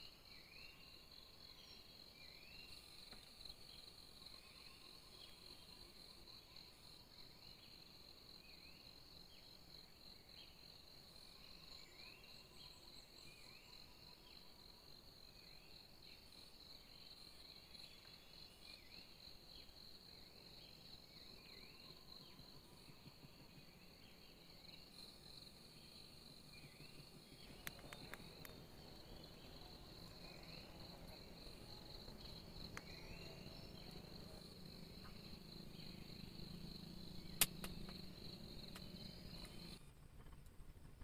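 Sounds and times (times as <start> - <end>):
sharp clicks: 27.5 - 28.6, 37.2 - 38.0.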